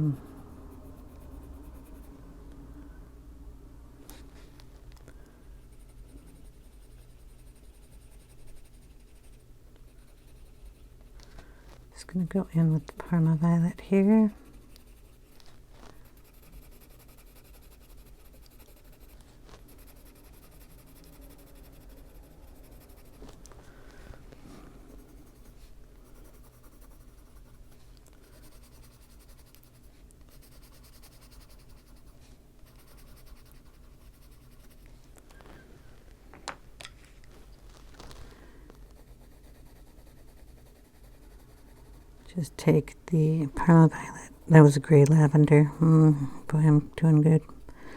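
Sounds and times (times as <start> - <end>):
pencil scratching on paper: 0.0 - 2.2, 5.6 - 10.9, 12.6 - 23.3, 24.9 - 34.9, 38.9 - 42.3.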